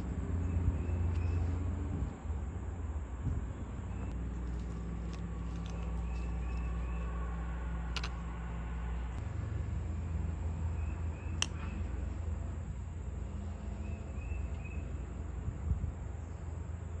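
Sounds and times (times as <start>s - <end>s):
steady low rumble: 0.0s - 17.0s
sharp clicks: 7.9s - 8.3s.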